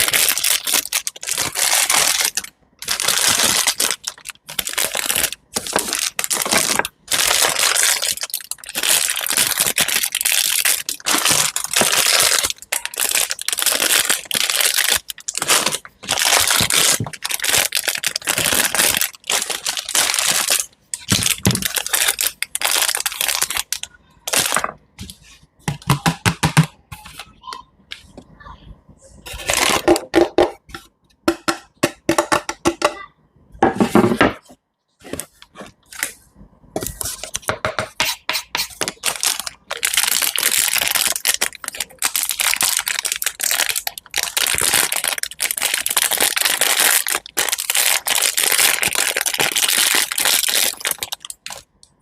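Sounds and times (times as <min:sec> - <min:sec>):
crisp crunching and crackling: 0:00.0 - 0:24.9, 0:38.7 - 0:52.0.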